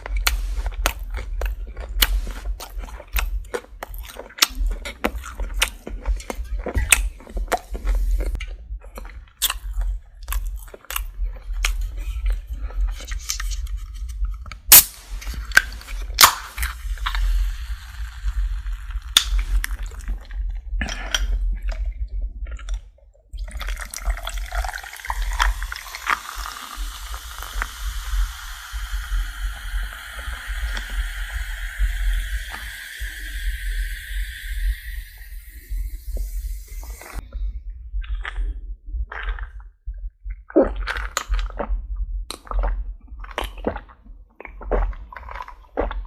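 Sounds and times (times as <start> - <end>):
steady hiss rising in pitch: 25.6 - 37.2.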